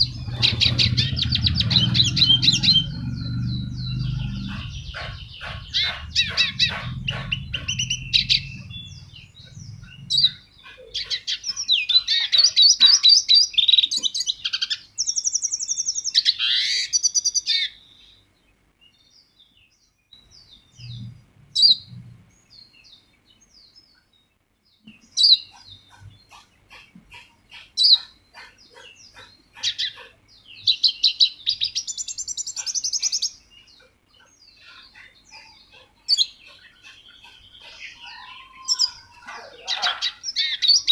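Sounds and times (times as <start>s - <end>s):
songbird trills and chirps: 0.0s - 40.9s.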